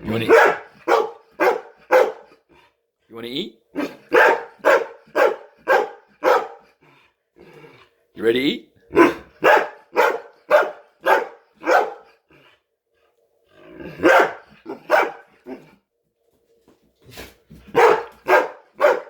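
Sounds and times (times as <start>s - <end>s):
dog barking: 0.1s - 2.4s, 3.7s - 6.7s, 8.9s - 12.2s, 13.9s - 15.7s, 17.7s - 19.0s.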